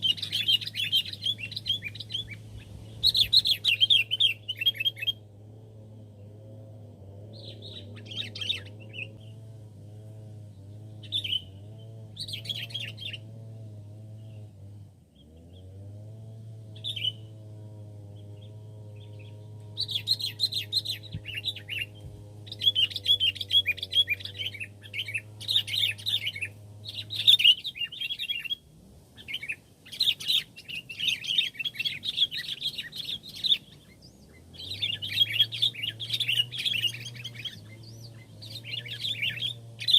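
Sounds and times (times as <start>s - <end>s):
birds chirping in chattering bursts: 0.0s - 5.2s, 10.5s - 13.2s, 18.4s - 39.9s
low steady hum: 0.0s - 39.9s.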